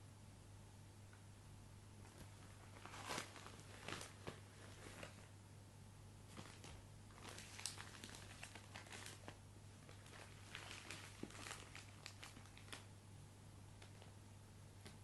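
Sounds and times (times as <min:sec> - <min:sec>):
plastic packaging crinkling: 0:02.1 - 0:05.3, 0:06.3 - 0:12.9, 0:13.8 - 0:14.2.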